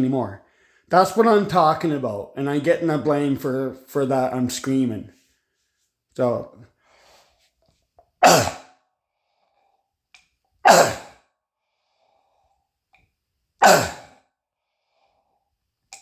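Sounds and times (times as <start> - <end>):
man barking coughs: 8.2 - 8.7, 10.6 - 11.2, 13.6 - 14.2.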